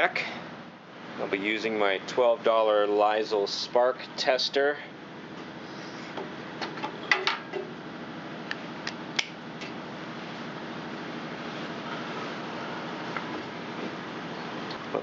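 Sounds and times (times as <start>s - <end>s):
steady fan-like hum: 0.0s - 15.0s.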